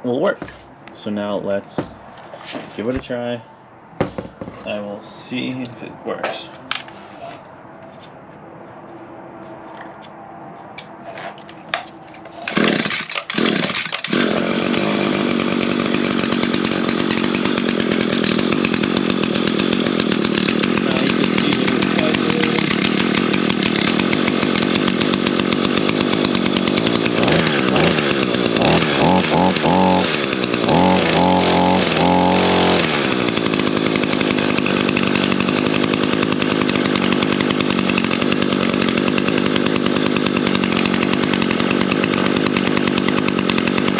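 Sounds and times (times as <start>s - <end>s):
string trimmer engine revving: 11.8s - 43.9s.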